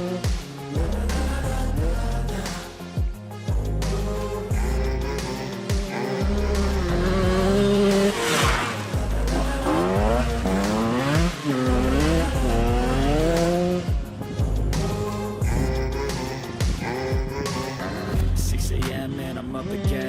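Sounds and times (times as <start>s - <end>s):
hip-hop beat: 0.0s - 20.0s
dirt bike engine revving: 4.6s - 18.3s.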